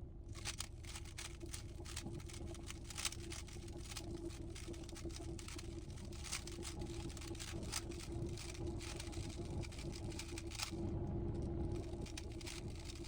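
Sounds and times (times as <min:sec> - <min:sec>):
steady low hum: 0:00.0 - 0:13.0
plastic puzzle cube clicking: 0:00.4 - 0:04.0.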